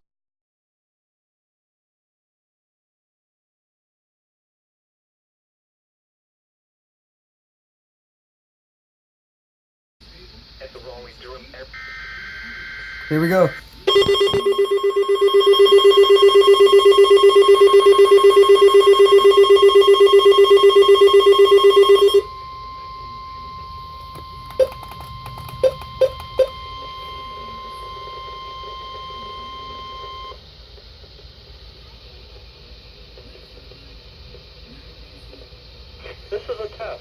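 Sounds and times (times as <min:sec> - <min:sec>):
radio hiss: 0:10.0 - 0:14.1, 0:26.7 - 0:37.0
steady alarm tone: 0:11.7 - 0:30.4
rapidly pulsing alarm beep: 0:11.8 - 0:30.4.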